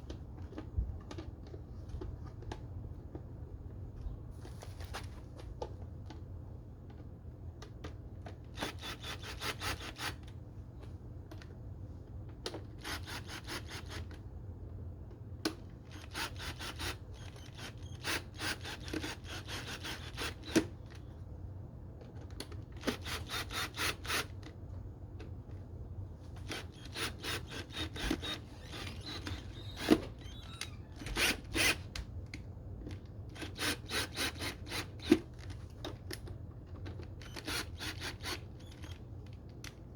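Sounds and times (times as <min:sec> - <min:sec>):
ratchet tool clicking: 0:37.2 - 0:39.0.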